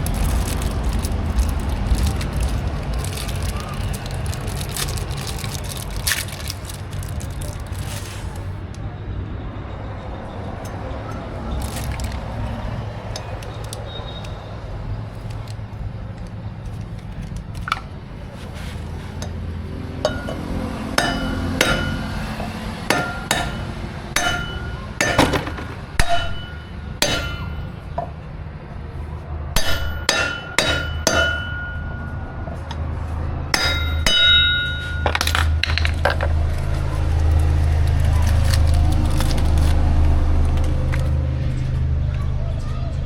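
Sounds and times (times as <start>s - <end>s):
hammer striking metal: 20.0s - 28.2s, 29.6s - 32.5s, 33.5s - 36.3s.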